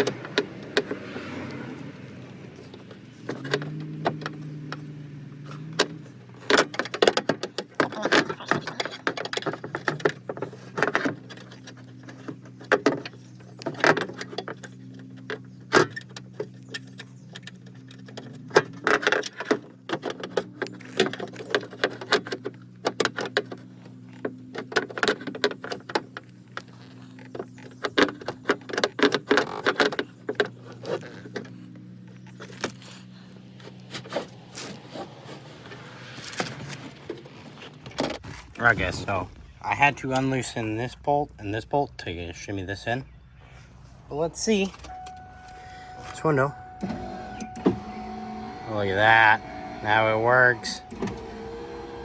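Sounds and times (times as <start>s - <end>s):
steady low hum: 31.4s - 52.0s.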